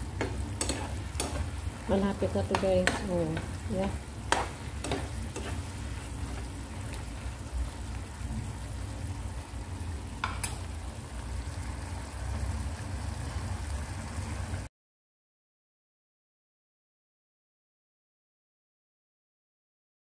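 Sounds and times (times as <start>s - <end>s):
food sizzling in a pan: 0.0s - 14.7s
utensil clinking against pan: 0.2s - 1.6s, 4.3s - 5.7s.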